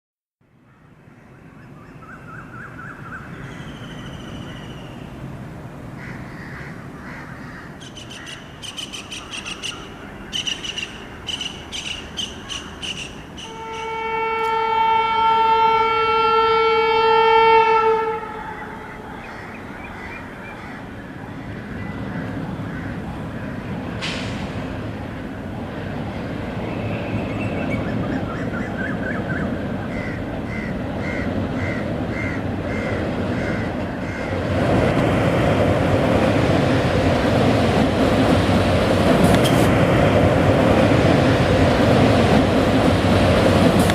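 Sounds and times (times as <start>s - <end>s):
birds calling: 0.7s - 5.2s, 6.0s - 14.0s, 18.4s - 23.8s, 26.0s - 34.8s
locomotive horn blast: 13.4s - 19.0s.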